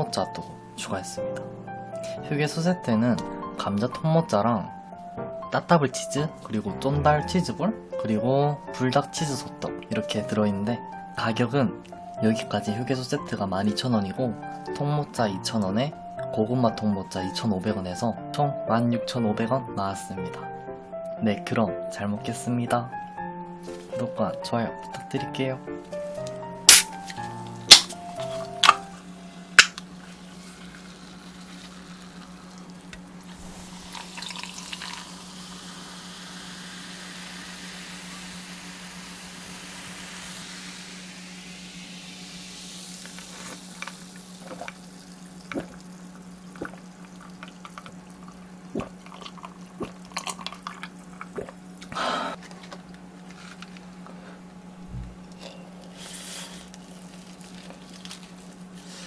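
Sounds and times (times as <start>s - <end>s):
low electrical hum: 25.5s - 59.0s
packaging rustling: 52.4s - 54.2s, 55.8s - 59.0s.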